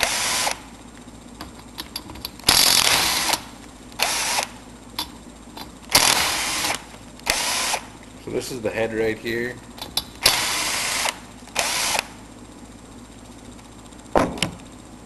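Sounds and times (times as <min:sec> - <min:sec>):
cordless power drill: 0:00.0 - 0:00.6, 0:04.0 - 0:04.5, 0:05.9 - 0:07.9, 0:10.2 - 0:12.1.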